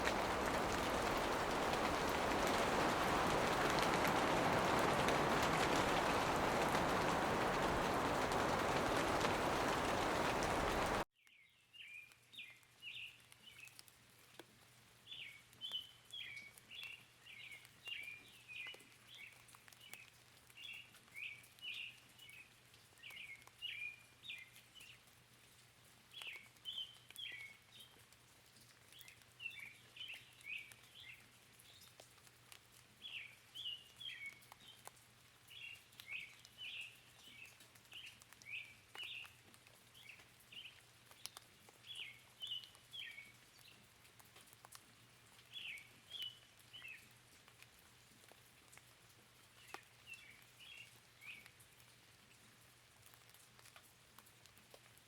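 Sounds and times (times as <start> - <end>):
heavy rain hissing: 0.0 - 11.0.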